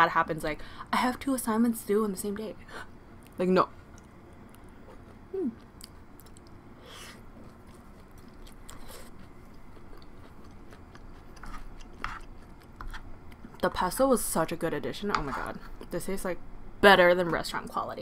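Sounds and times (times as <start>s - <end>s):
person humming mm: 5.3s - 5.6s
close-up chewing: 7.2s - 13.6s.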